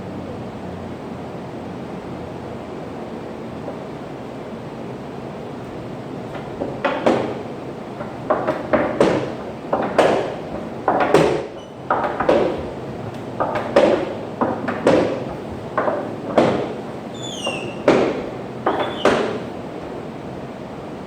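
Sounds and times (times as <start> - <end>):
sudden knocks and thuds: 6.3 - 20.0.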